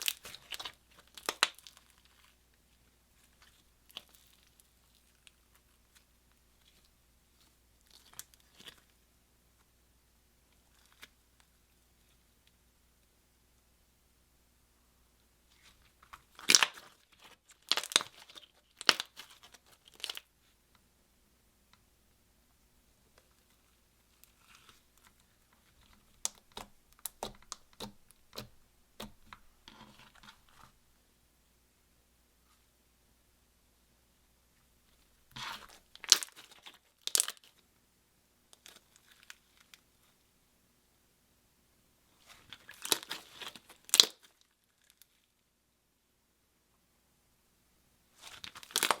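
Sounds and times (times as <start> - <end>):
slime crackling and popping: 0.0 - 2.4, 15.6 - 20.3, 25.7 - 29.4, 35.4 - 37.5, 42.5 - 45.2, 48.2 - 49.0.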